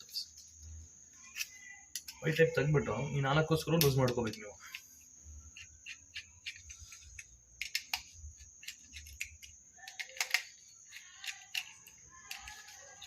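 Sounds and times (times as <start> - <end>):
screwdriver clicking on screws: 8.6 - 13.0.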